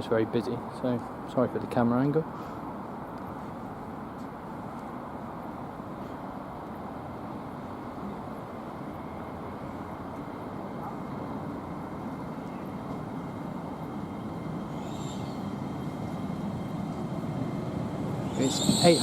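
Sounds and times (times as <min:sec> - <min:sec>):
train rumble: 0:00.0 - 0:19.0
faint high squeal: 0:14.7 - 0:15.5, 0:18.2 - 0:19.0.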